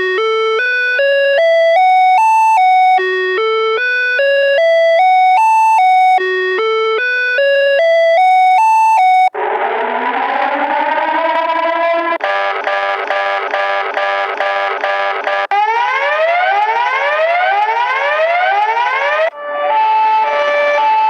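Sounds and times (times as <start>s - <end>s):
electronic chime melody: 1.0s - 9.4s.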